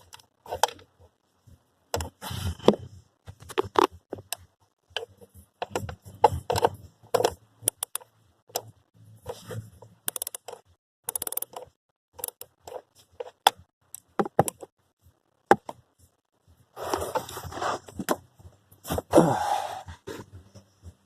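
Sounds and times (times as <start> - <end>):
scraping and rustling: 16.8 - 18.1.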